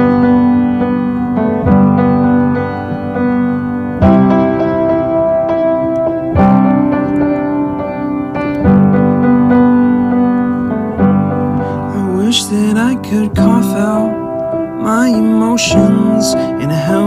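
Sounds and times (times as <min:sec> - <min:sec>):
piano chords: 0:00.0 - 0:17.0
person singing: 0:11.9 - 0:17.0.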